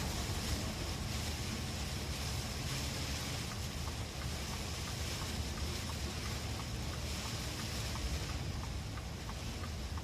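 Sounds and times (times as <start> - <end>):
heavy rain hissing: 0.0 - 8.6
faint ticking: 2.1 - 10.0.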